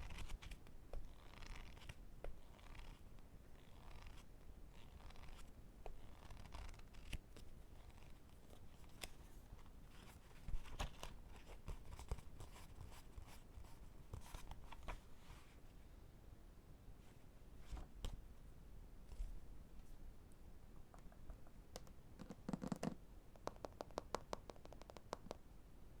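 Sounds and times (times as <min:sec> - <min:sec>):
fingers tapping on books: 0:21.0 - 0:25.4.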